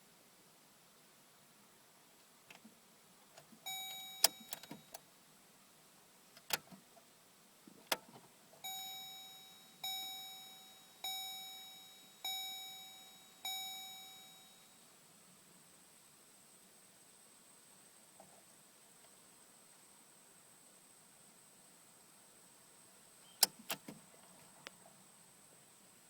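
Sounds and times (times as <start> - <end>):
car chime: 3.7 - 5.0, 8.6 - 14.7.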